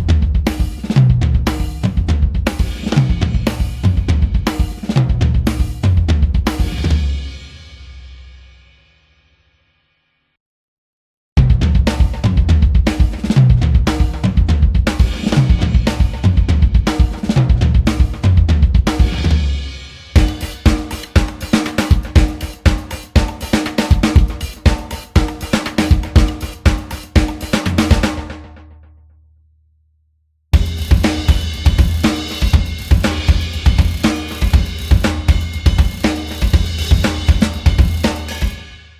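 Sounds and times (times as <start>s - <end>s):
steady low bass tone: 0.0s - 6.4s, 13.4s - 19.5s, 30.6s - 38.1s
drum kit groove: 0.0s - 8.1s, 11.4s - 28.7s, 30.6s - 38.9s.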